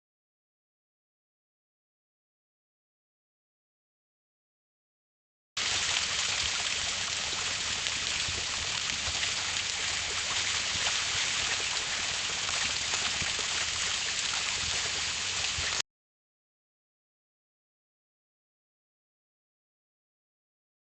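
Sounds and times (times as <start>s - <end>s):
garden hose running water: 5.6s - 15.8s.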